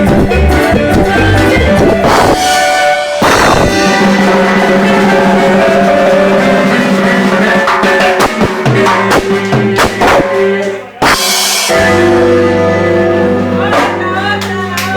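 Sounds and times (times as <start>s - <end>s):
drums: 0.0s - 14.9s
keyboard chords: 0.0s - 14.9s
cymbal crash: 2.0s - 10.4s, 11.0s - 14.3s.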